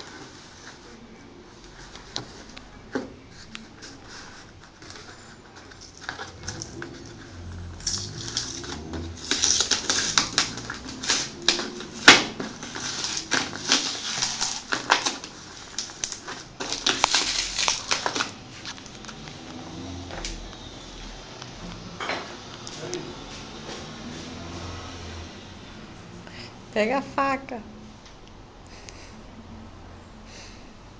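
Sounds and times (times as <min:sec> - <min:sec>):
packaging rustling: 0:01.6 - 0:19.6.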